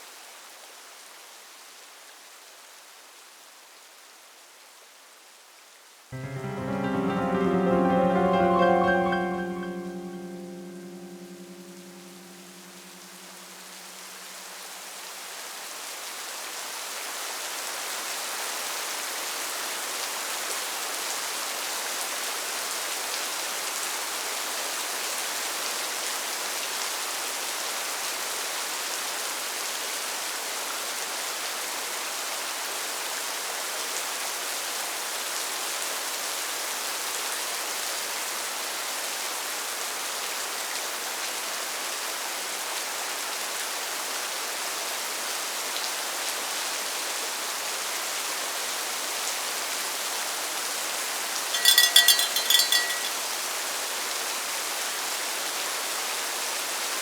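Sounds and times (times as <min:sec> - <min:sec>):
steady rain: 0:00.0 - 0:06.1, 0:27.8 - 0:50.4.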